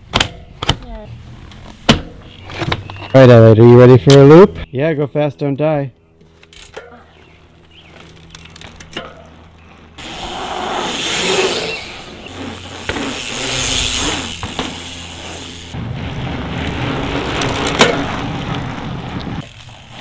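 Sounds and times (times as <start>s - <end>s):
mountain bike tyre noise: 6.2s - 20.0s
wind rushing: 15.0s - 19.4s.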